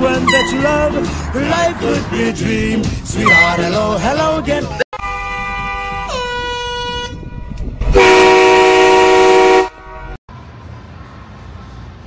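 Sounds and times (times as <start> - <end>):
loud air horn blast: 0.2 - 0.8, 3.2 - 3.6, 5.0 - 10.2.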